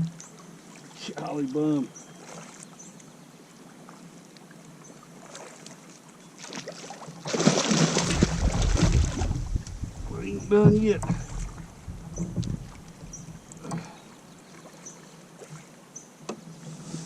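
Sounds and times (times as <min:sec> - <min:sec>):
water lapping: 0:00.0 - 0:17.0
fish splashing and thrashing: 0:05.2 - 0:14.8.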